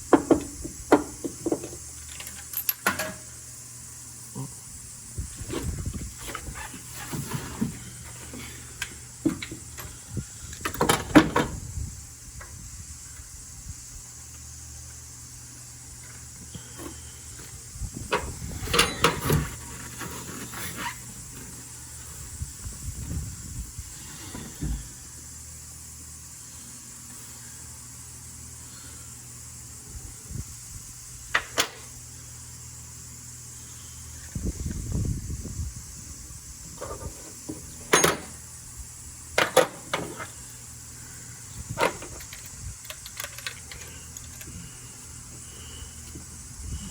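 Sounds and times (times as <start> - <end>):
faint steady hum: 0.0 - 46.9
tools and engine parts clattering: 0.1 - 3.3, 18.1 - 21.5, 36.8 - 38.4, 39.3 - 40.4, 41.7 - 44.6.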